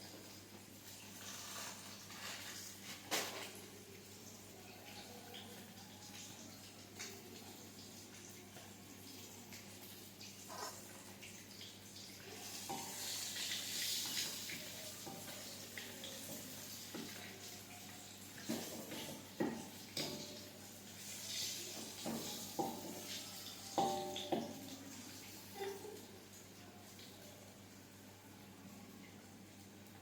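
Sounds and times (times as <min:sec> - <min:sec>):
tap water running into sink: 0:05.4 - 0:26.0
dishes clinking: 0:23.8 - 0:24.7.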